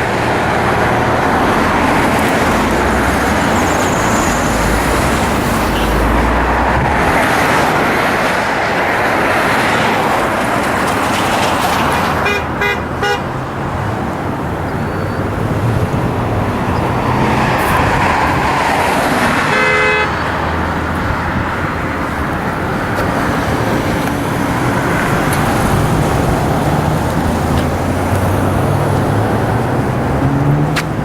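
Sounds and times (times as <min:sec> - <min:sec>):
freeway traffic rushing: 0:00.0 - 0:31.0
car horn: 0:11.9 - 0:13.5, 0:19.2 - 0:20.4.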